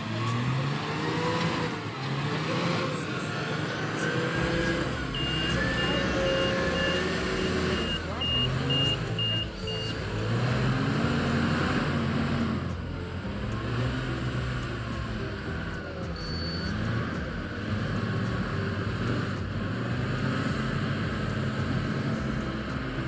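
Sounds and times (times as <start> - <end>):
diesel engine under load: 0.0 - 23.0
reversing alarm beeping: 4.0 - 10.8, 16.2 - 17.0.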